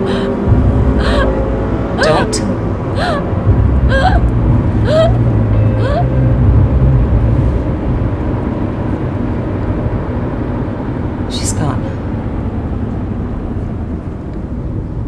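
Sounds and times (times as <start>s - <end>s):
high voice crying out: 0.0s - 0.4s, 1.0s - 1.3s, 2.0s - 3.3s, 3.9s - 5.2s, 5.8s - 6.2s.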